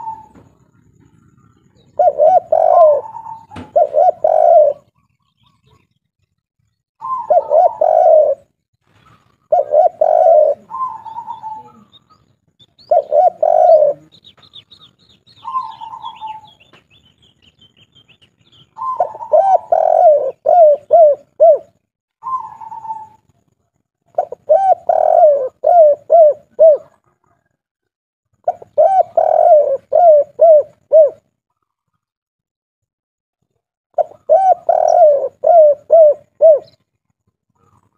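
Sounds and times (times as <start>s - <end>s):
dove cooing: 0.0s - 5.8s, 7.0s - 8.5s, 9.2s - 16.8s, 18.6s - 23.3s, 24.1s - 27.6s, 28.4s - 31.3s, 34.0s - 36.8s
small bird twittering: 8.9s - 21.4s.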